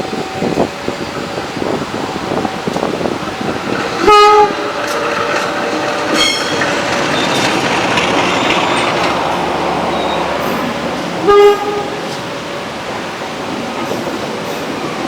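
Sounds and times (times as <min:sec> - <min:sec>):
train wheels rushing on rails: 0:00.0 - 0:15.0
train horn blast: 0:04.0 - 0:07.4, 0:11.2 - 0:12.0.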